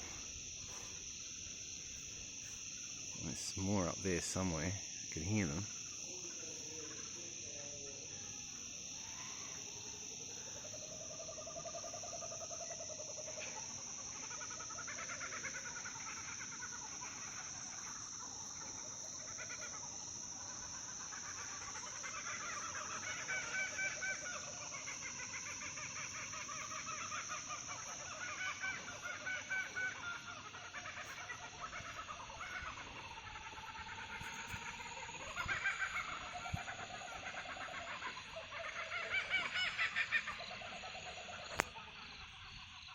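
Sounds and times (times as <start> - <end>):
cicadas humming: 0.0 - 42.9
kookaburras laughing: 0.0 - 42.9.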